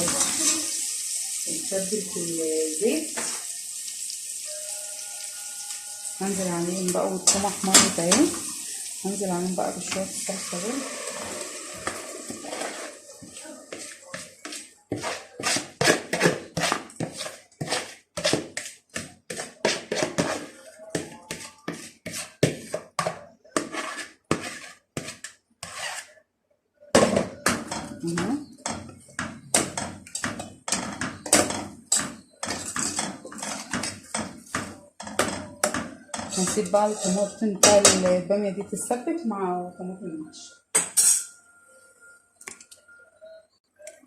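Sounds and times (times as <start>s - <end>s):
spoon scraping a cooking pot: 5.2s - 8.6s, 9.7s - 26.2s, 27.2s - 38.2s, 40.8s - 41.4s.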